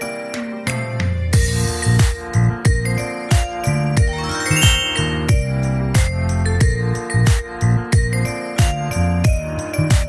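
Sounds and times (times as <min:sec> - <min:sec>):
background music with steady beat: 0:00.0 - 0:10.0
bright bell-like tones: 0:04.1 - 0:05.6.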